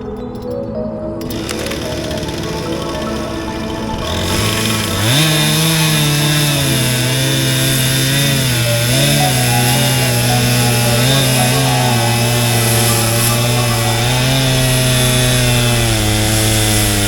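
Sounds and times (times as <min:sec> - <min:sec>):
chainsaw running at high speed: 0:01.2 - 0:17.0.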